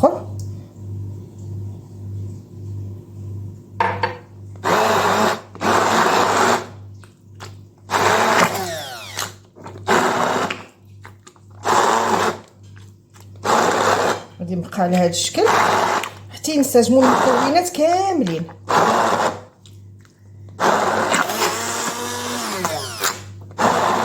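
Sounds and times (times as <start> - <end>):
electric blender motor: 4.6 - 6.8, 7.9 - 10.6, 11.6 - 12.4, 13.4 - 14.2, 15.4 - 16.2, 17.0 - 17.6, 18.7 - 19.5, 20.6 - 24.0.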